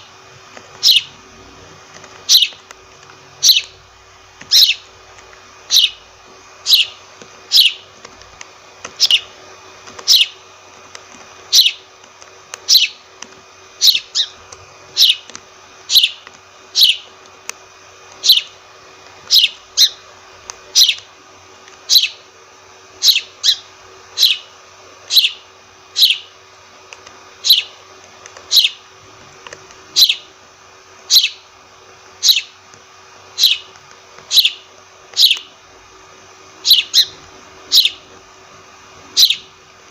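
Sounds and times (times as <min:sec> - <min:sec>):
faint steady hum: 0:00.0 - 0:39.9
sparrow chirping: 0:00.8 - 0:01.1, 0:02.3 - 0:02.6, 0:03.4 - 0:03.8, 0:04.5 - 0:04.9, 0:05.7 - 0:06.0, 0:06.6 - 0:07.9, 0:09.0 - 0:09.3, 0:10.0 - 0:10.4, 0:11.5 - 0:11.9, 0:12.7 - 0:13.0, 0:13.8 - 0:14.4, 0:15.0 - 0:15.3, 0:15.9 - 0:17.1, 0:18.2 - 0:18.6, 0:19.3 - 0:20.0, 0:20.7 - 0:21.0, 0:21.9 - 0:22.2, 0:23.0 - 0:24.5, 0:25.1 - 0:26.3, 0:27.4 - 0:27.8, 0:28.5 - 0:28.8, 0:29.9 - 0:30.3, 0:31.1 - 0:31.4, 0:32.2 - 0:32.6, 0:33.4 - 0:33.7, 0:34.3 - 0:35.5, 0:36.6 - 0:38.1, 0:39.1 - 0:39.5.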